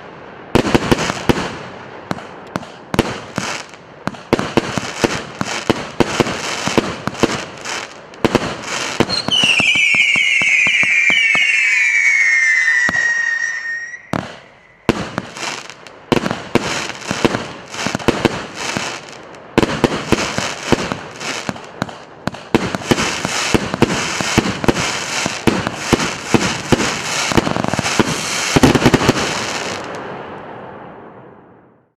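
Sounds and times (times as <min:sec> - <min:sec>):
firework launch shots and bursts: 0:00.6 - 0:30.1
firework crackle: 0:00.6 - 0:30.4
screaming firework whistles: 0:08.8 - 0:15.7.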